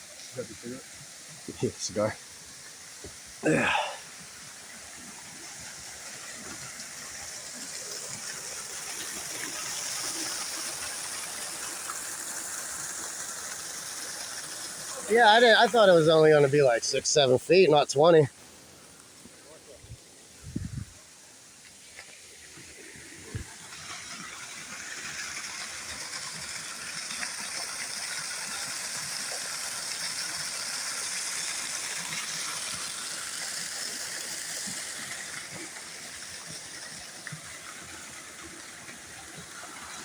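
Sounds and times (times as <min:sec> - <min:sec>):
waterfall rushing: 0:03.4 - 0:18.3.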